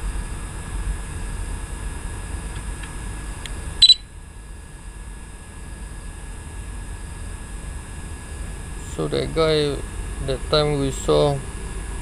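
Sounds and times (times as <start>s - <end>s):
low hum inside car: 0.0s - 12.0s
short electronic beep: 3.8s - 4.0s.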